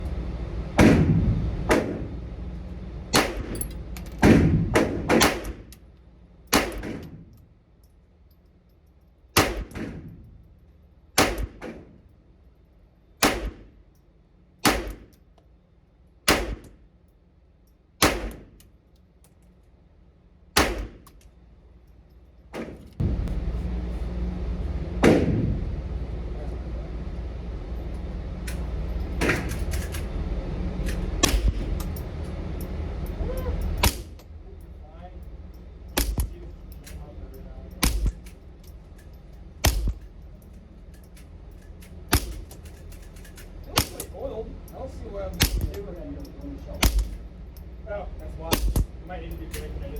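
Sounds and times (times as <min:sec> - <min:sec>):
steady low rumble: 0:00.0 - 0:49.9
pistol shots: 0:03.2 - 0:03.6, 0:04.2 - 0:05.7, 0:06.5 - 0:07.2, 0:09.4 - 0:10.1, 0:11.2 - 0:11.9, 0:13.2 - 0:13.8, 0:14.6 - 0:15.2, 0:16.3 - 0:16.8, 0:18.0 - 0:18.6, 0:20.6 - 0:21.1, 0:25.0 - 0:25.4.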